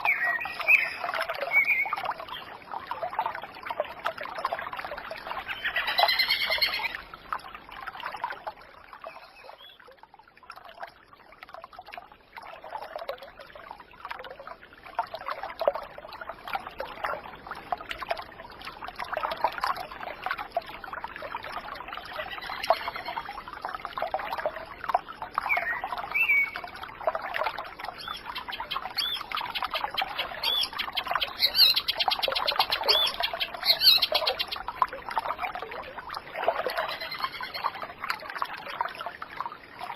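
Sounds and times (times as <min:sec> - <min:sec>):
water trickling and babbling: 0:00.0 - 0:39.9
birds calling: 0:28.0 - 0:34.6.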